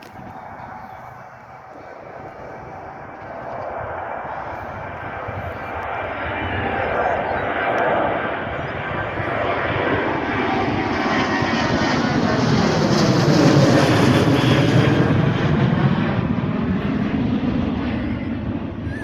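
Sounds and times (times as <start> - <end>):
jet engines roaring: 0.0 - 19.0.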